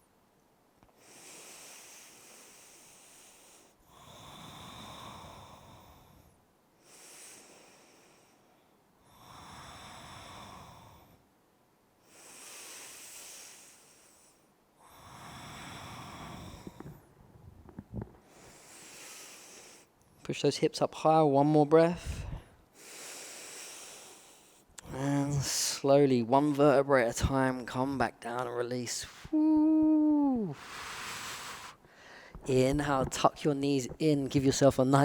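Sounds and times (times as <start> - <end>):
person breathing deeply: 1.0 - 8.5, 18.2 - 19.9, 22.0 - 25.0, 29.1 - 32.4.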